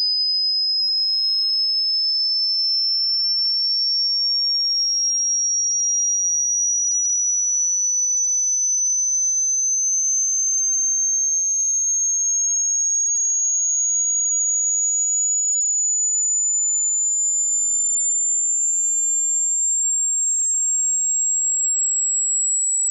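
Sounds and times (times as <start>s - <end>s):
electronic sine tone rising in pitch: 7.0s - 10.6s.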